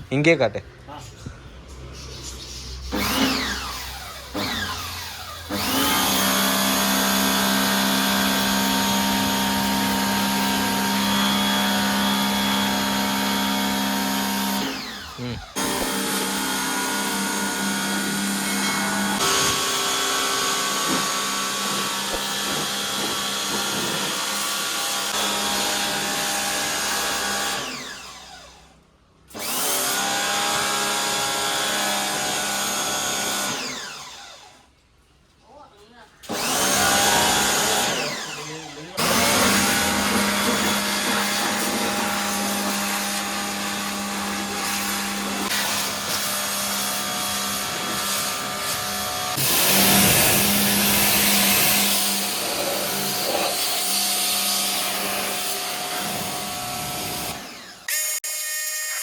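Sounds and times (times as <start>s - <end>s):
pressure washer motor running: 3.0s - 26.5s, 36.3s - 57.9s.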